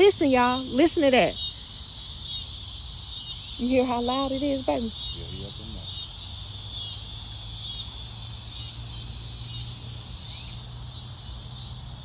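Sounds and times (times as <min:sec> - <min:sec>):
insects calling shrilly: 0:00.0 - 0:12.0.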